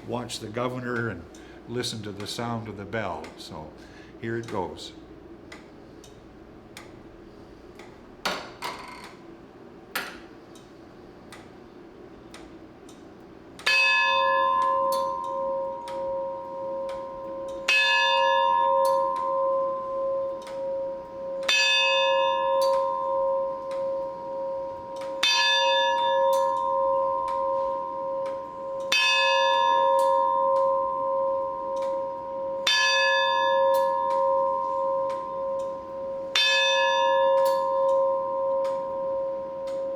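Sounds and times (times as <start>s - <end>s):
tower clock bell ringing: 13.6s - 39.9s.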